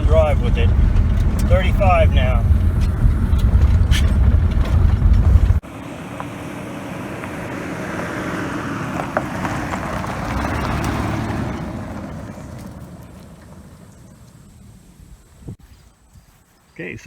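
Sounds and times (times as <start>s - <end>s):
wind buffeting microphone: 0.0s - 5.6s, 8.4s - 16.4s
wind and road noise: 0.0s - 17.0s.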